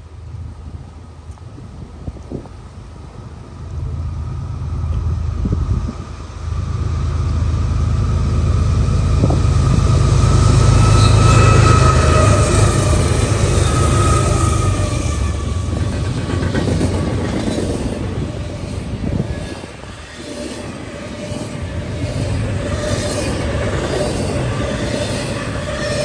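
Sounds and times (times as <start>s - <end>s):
train rumbling past: 0.0s - 26.0s.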